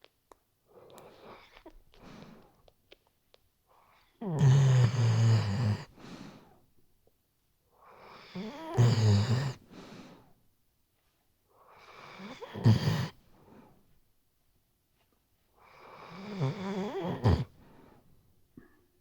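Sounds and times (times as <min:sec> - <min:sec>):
dog snoring: 0:03.8 - 0:06.0, 0:07.9 - 0:09.6, 0:11.7 - 0:13.2, 0:15.6 - 0:17.6.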